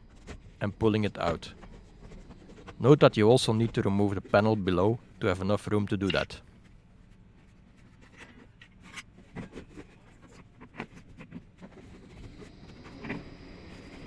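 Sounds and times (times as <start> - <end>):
hands scraping and handling parts: 0.0 - 5.1, 6.0 - 14.0
faint steady hum: 0.0 - 14.0.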